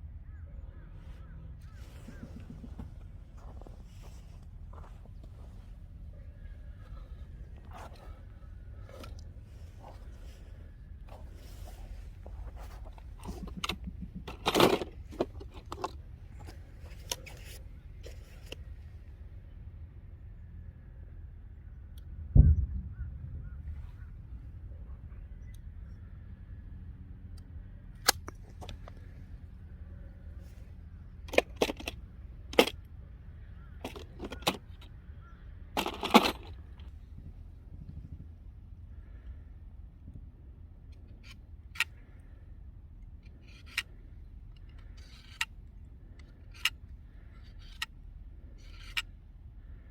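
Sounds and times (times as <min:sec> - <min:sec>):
low steady background hum: 0:00.0 - 0:49.9
hand tools clicking and crunching: 0:11.1 - 0:18.6, 0:31.2 - 0:32.7, 0:33.8 - 0:34.9, 0:35.8 - 0:36.9.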